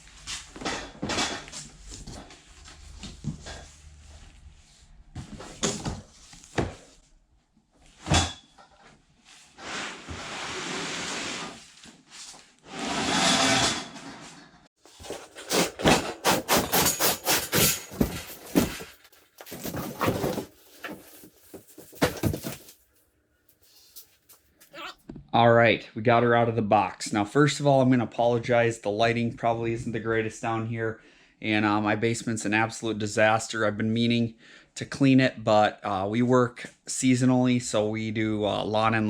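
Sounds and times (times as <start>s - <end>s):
cardboard tearing: 14.9s - 22.8s.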